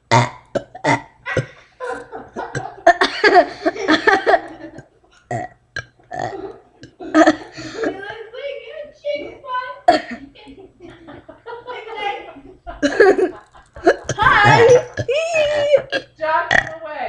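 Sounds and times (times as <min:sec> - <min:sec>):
boy burping: 0:00.0 - 0:01.6, 0:02.4 - 0:03.5, 0:04.7 - 0:07.9, 0:09.8 - 0:10.2, 0:12.8 - 0:16.8.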